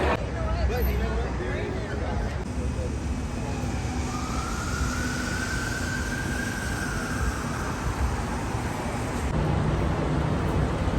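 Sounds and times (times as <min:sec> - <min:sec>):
vehicle engine rumble: 0:00.0 - 0:10.9.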